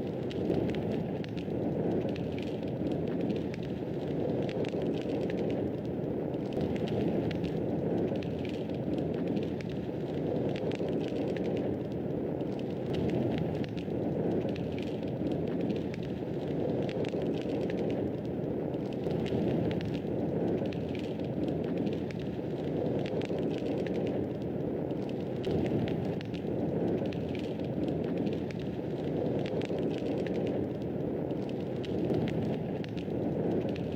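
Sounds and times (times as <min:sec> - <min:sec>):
wood fire crackling and popping: 0:00.0 - 0:33.9.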